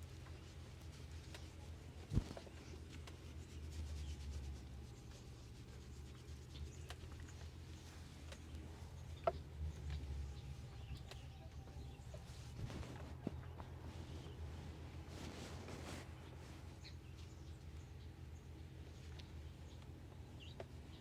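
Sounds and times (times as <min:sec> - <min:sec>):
hands rubbing hair and scalp: 0:00.0 - 0:09.4, 0:10.0 - 0:16.8.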